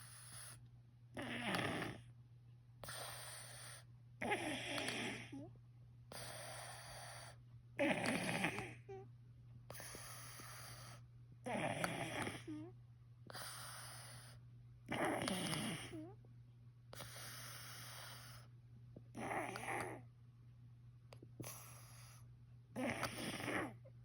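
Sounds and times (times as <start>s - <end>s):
person snoring: 1.2s - 2.1s, 2.8s - 5.5s, 6.1s - 9.0s, 9.7s - 12.7s, 13.3s - 16.1s, 19.1s - 20.0s, 22.8s - 23.8s.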